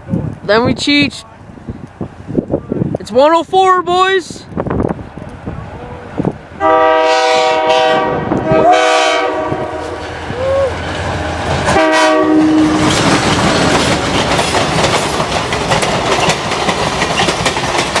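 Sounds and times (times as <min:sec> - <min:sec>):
train horn blasts: 0:06.6 - 0:10.0, 0:11.7 - 0:12.9
train cars clattering on rails: 0:10.8 - 0:18.0.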